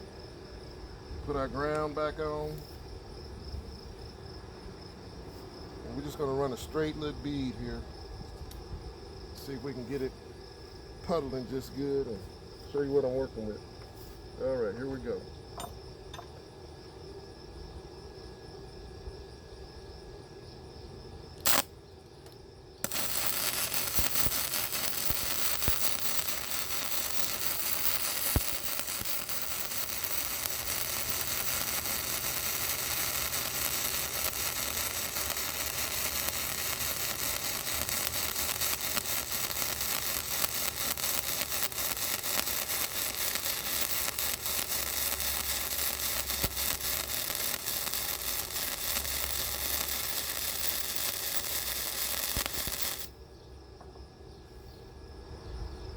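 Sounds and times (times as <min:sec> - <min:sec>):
welding arc crackling: 0:21.4 - 0:21.7, 0:22.8 - 0:53.1.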